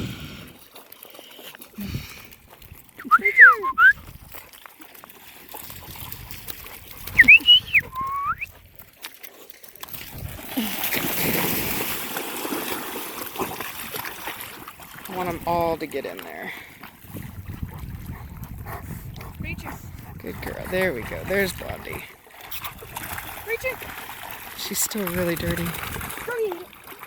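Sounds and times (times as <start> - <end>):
water splashing: 0.0 - 27.0
person whistling: 3.0 - 4.0, 7.1 - 8.5.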